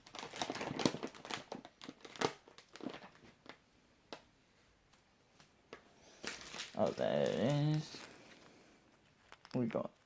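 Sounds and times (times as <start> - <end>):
plastic wrappers crinkling: 0.0 - 3.6, 6.1 - 8.5.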